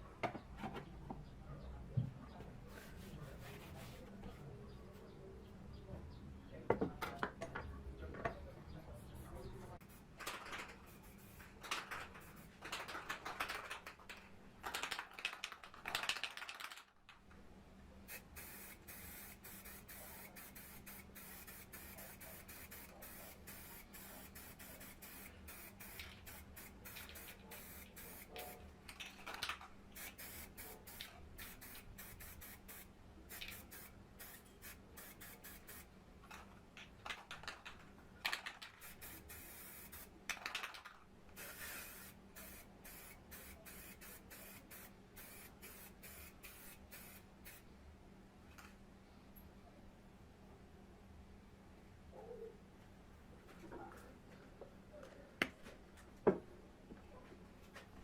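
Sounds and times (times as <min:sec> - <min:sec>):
spray paint hissing: 0:10.8 - 0:11.6, 0:12.2 - 0:12.5, 0:18.1 - 0:28.6, 0:29.9 - 0:35.9, 0:38.8 - 0:40.1, 0:41.3 - 0:47.6.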